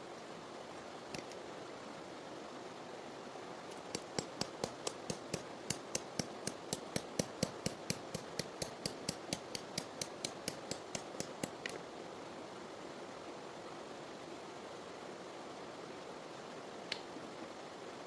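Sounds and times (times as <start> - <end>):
sharp knocks: 3.8 - 11.7.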